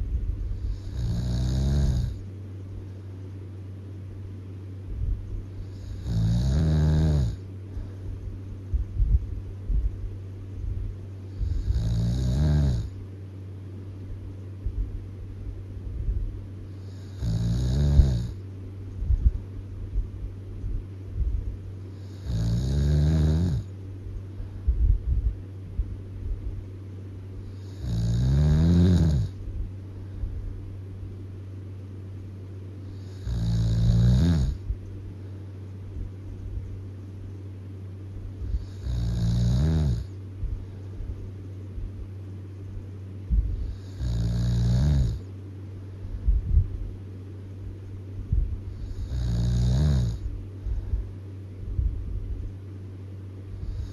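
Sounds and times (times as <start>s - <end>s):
steady low hum: 0.0s - 53.9s
person snoring heavily: 0.6s - 2.2s, 5.6s - 7.4s, 11.3s - 12.9s, 16.7s - 18.4s, 21.9s - 23.7s, 27.4s - 29.4s, 32.9s - 34.6s, 38.5s - 40.1s, 43.6s - 45.2s, 48.7s - 50.3s.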